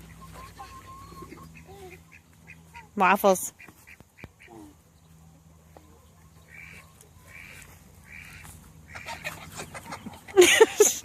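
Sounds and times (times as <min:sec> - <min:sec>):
duck quacking: 0:06.5 - 0:10.4.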